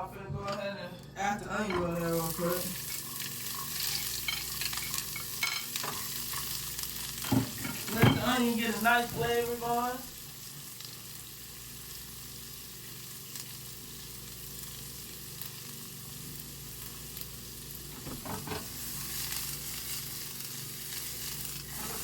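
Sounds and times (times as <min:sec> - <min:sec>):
onions sizzling in a hot pan: 0:01.9 - 0:22.0.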